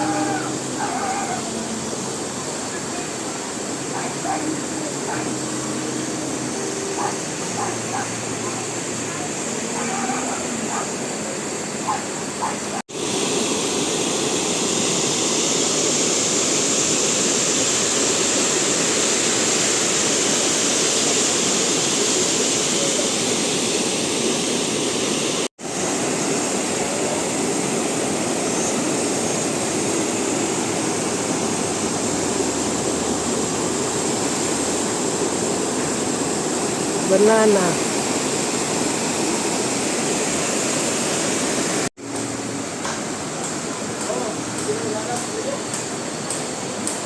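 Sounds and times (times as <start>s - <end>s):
river rushing: 0.0s - 47.0s.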